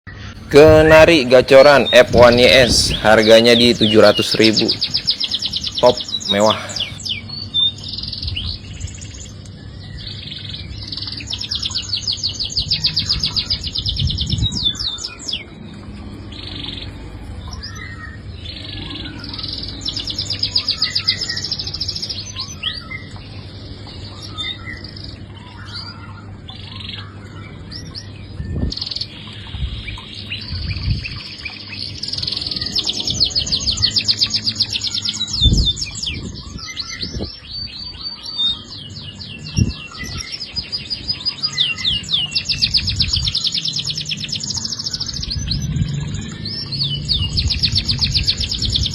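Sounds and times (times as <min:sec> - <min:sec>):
canary singing trills: 0:00.1 - 0:48.9.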